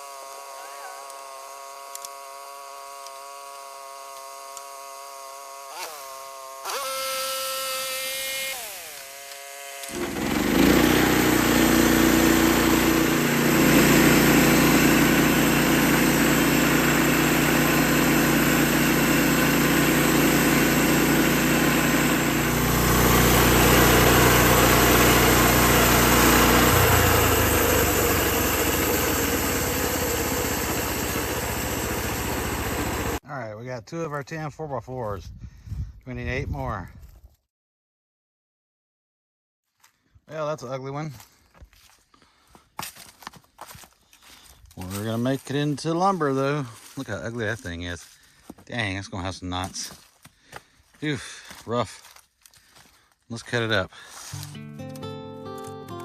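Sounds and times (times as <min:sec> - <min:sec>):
band saw cutting log: 0:00.0 - 0:33.2
sawmill engine humming: 0:00.0 - 0:33.2.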